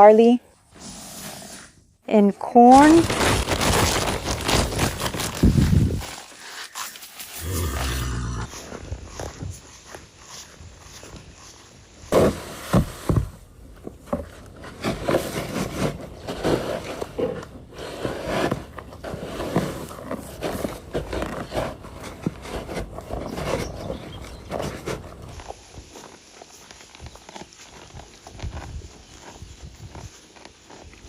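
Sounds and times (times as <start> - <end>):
animals making rough noises: 7.3 - 9.4.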